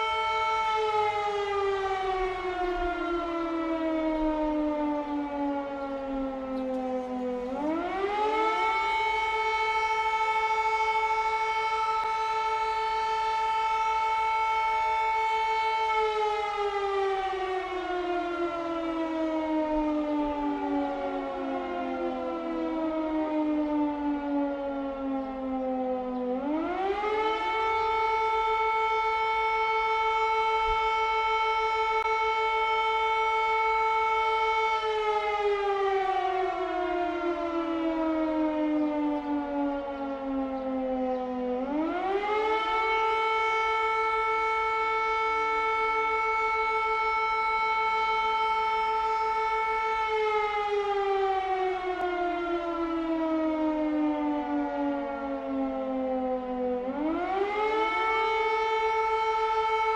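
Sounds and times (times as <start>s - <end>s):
air raid siren wailing: 0.0s - 59.9s.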